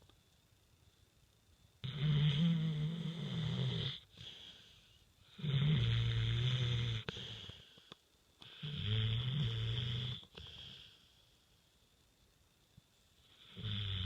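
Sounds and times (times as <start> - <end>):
quiet breaths: 0.0 - 14.0
dog snoring: 1.8 - 7.8, 8.4 - 11.0, 13.2 - 14.0.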